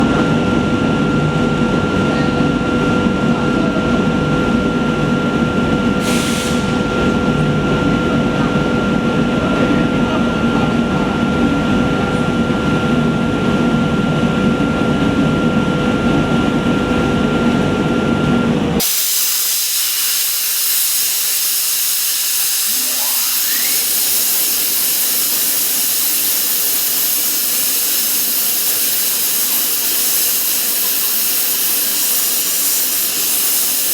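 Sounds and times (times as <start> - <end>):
machine whine: 0.0 - 33.9
plasma cutting torch hissing: 6.0 - 6.9, 18.8 - 33.9.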